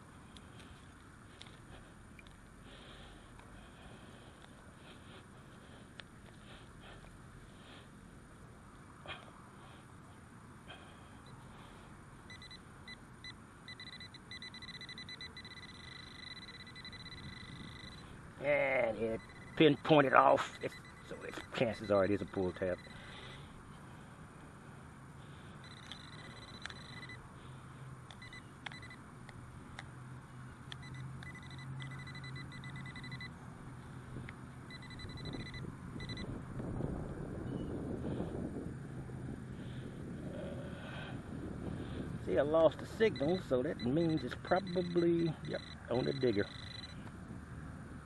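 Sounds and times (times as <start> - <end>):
metal detector beeping tone: 12.3 - 23.4, 25.6 - 27.2, 28.1 - 29.0, 30.7 - 33.4, 34.7 - 36.3, 42.9 - 47.1
sharp clicks: 25.6 - 27.2, 28.0 - 29.9.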